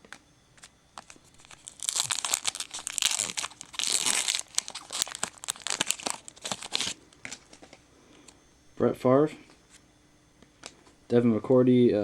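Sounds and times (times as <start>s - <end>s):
foil pack crinkling and tearing: 1.0s - 7.8s.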